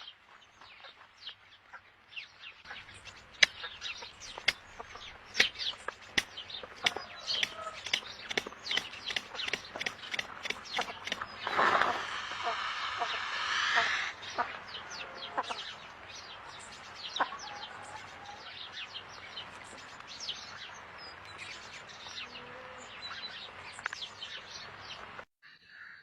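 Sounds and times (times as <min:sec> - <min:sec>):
birds chirping: 0:02.7 - 0:12.0.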